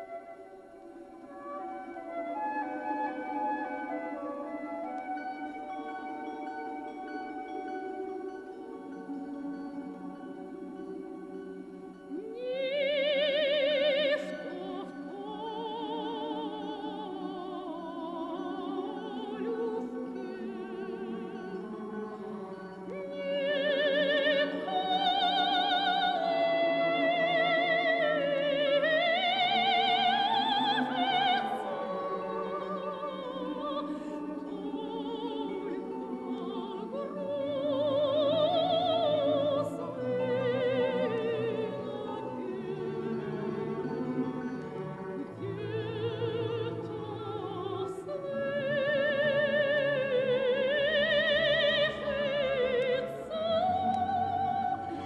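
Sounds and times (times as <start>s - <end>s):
operatic singing: 0.0s - 55.0s.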